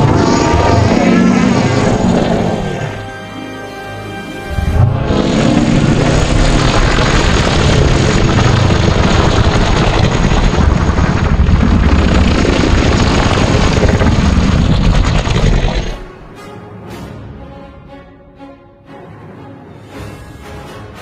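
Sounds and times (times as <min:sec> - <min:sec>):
dragon rumbling rushing roar: 0:00.0 - 0:03.0, 0:04.5 - 0:16.2.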